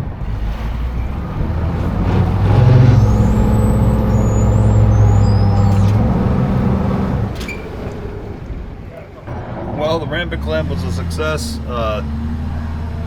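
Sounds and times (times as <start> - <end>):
boat motor under throttle: 0.0 - 9.7.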